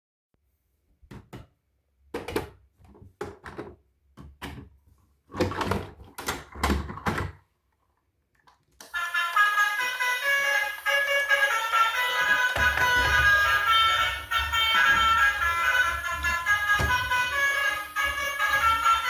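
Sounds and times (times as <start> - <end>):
irregular knocks and thumps: 12.4 - 19.0.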